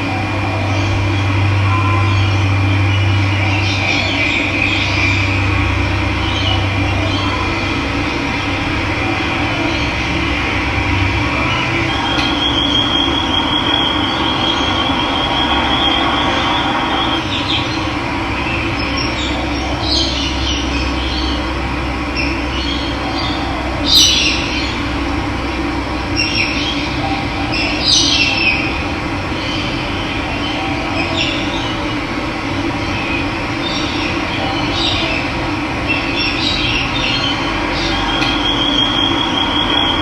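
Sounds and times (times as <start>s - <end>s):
bird trilling: 11.3s - 17.8s.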